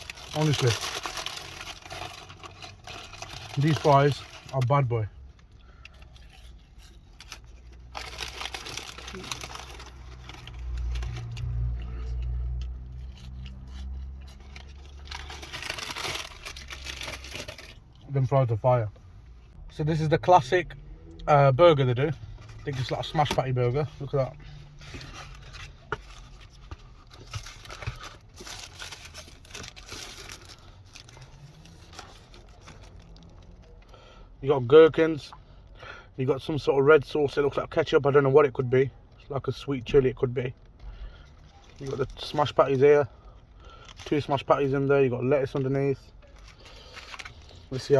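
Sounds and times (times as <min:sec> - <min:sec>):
paper packaging crinkling: 0:00.0 - 0:05.1, 0:06.2 - 0:11.8, 0:13.0 - 0:17.9, 0:22.5 - 0:33.8, 0:45.6 - 0:47.9.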